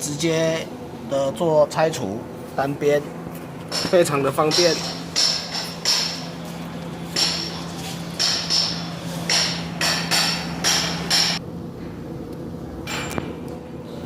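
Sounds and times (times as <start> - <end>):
hammer striking metal: 3.7 - 6.4, 7.1 - 11.4.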